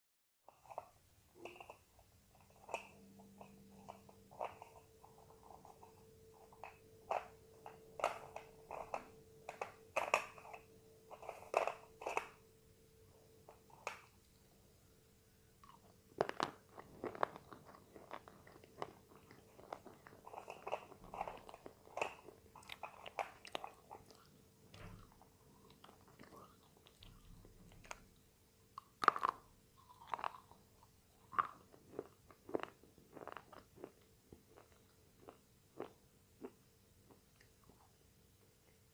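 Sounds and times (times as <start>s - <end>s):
faint steady hum: 0.5s - 38.9s
slate pencil crunching: 2.4s - 12.4s.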